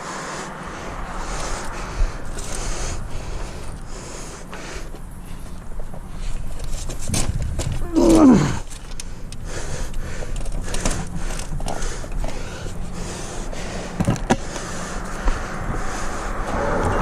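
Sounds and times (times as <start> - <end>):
traffic noise: 0.0 - 17.0.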